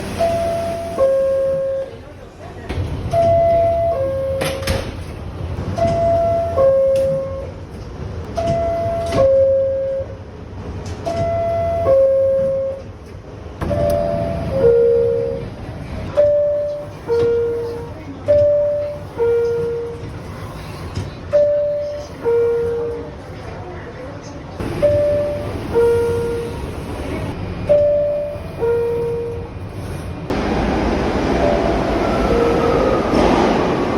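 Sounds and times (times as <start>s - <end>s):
two-tone door chime: 8.4s - 10.1s, 13.6s - 15.5s.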